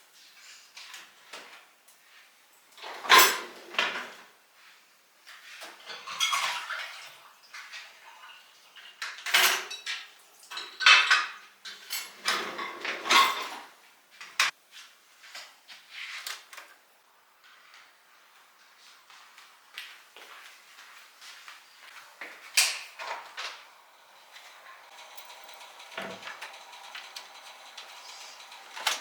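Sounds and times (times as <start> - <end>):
dishes and cutlery clinking: 2.8 - 4.2, 5.6 - 7.1, 7.7 - 13.7.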